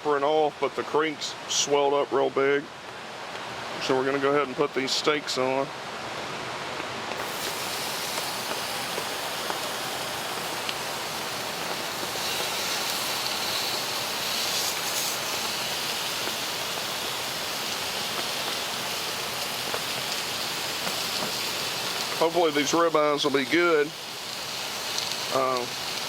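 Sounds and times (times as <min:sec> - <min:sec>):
steak sizzling in a pan: 0:07.2 - 0:26.0.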